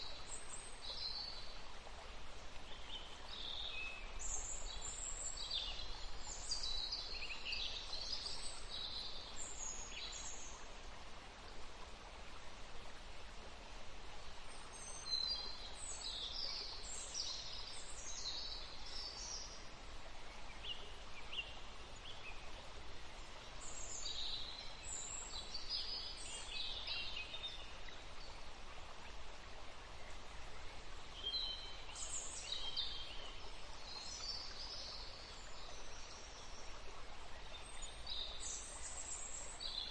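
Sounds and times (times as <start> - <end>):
faint steady hiss: 0.0 - 39.9
songbirds chirping: 0.0 - 39.9.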